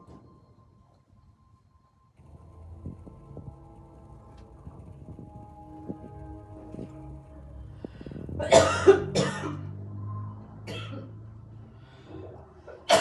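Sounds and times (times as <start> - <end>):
low steady hum: 0.0 - 13.0
person coughing: 8.4 - 9.6, 10.7 - 11.2.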